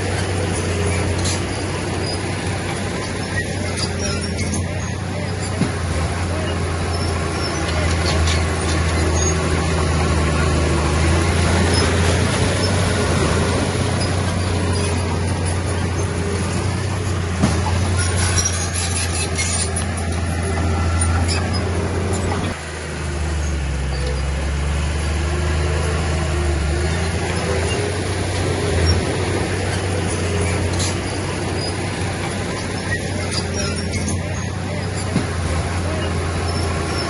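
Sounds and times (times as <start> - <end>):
diesel engine running: 0.0 - 37.0.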